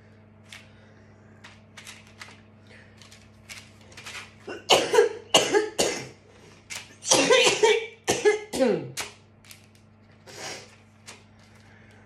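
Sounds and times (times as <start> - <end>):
woman coughing: 4.5 - 6.2, 7.0 - 9.0.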